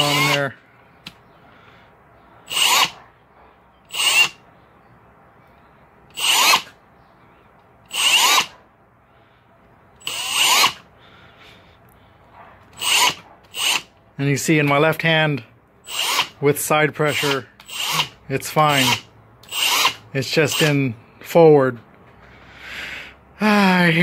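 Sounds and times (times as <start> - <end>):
hammer drill motor whining: 0.0 - 0.6, 2.5 - 3.0, 3.9 - 4.4, 6.1 - 6.8, 7.9 - 8.5, 10.0 - 10.8, 12.8 - 13.9, 15.9 - 16.4, 17.0 - 20.8.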